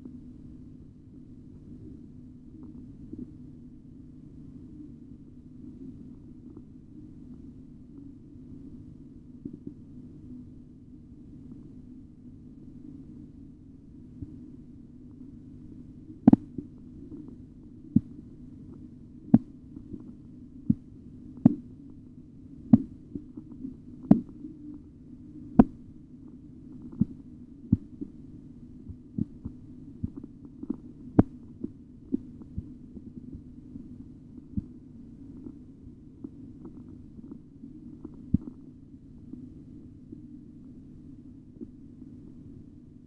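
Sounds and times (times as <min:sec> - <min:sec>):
low steady hum: 0:00.0 - 0:43.0
pulse taps through stethoscope: 0:16.2 - 0:16.7, 0:19.3 - 0:20.1, 0:20.7 - 0:21.6, 0:22.7 - 0:23.0, 0:24.0 - 0:24.4, 0:25.6 - 0:25.8, 0:29.2 - 0:31.4.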